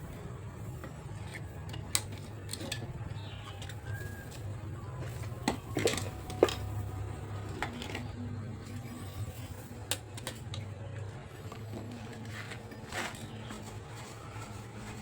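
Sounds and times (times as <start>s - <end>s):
metal parts clinking: 1.1s - 10.7s.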